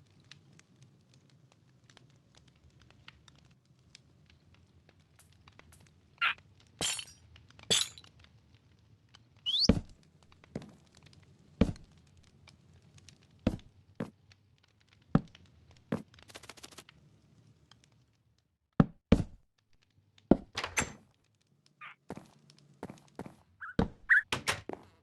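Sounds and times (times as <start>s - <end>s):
short rising squeak: 9.5s - 9.8s
quick run of ticks: 16.2s - 16.9s.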